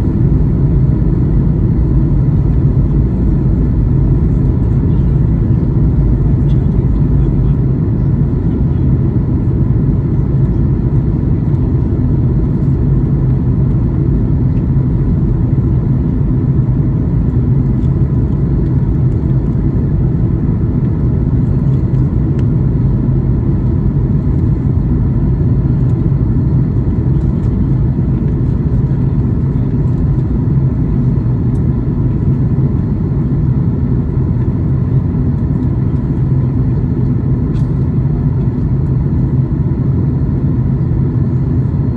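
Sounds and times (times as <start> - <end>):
airliner cabin engine rumble: 0.0 - 41.9.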